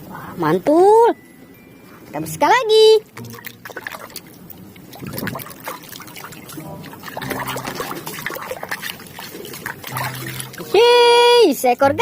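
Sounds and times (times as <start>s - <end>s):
water trickling and splashing: 3.0s - 11.8s.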